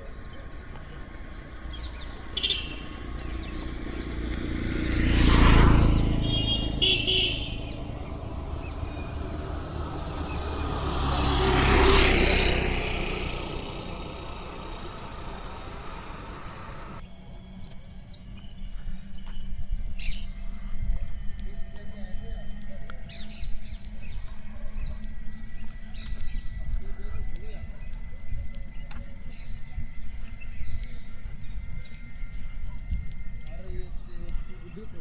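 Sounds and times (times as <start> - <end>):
road vehicles passing: 0.0 - 17.0, 23.0 - 35.0
short horn toot: 2.2 - 3.5, 6.0 - 8.3.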